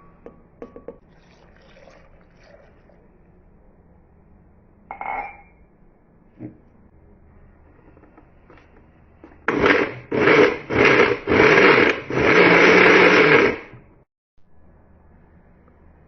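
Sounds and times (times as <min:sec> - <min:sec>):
blender motor pulsing: 0:09.5 - 0:13.8.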